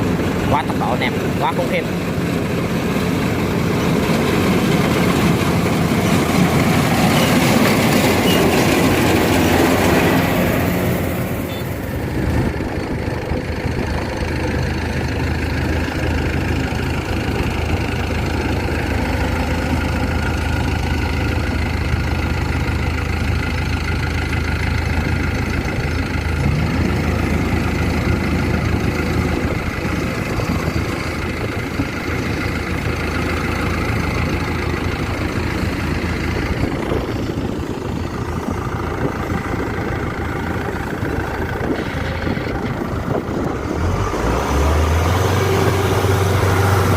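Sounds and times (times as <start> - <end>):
diesel engine droning under load: 0.0 - 46.9.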